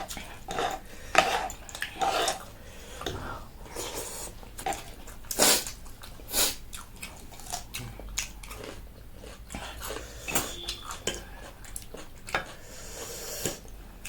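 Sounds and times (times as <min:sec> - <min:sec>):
chewing and biting: 0:04.6 - 0:12.8
cutlery clinking on dishes: 0:10.3 - 0:11.3.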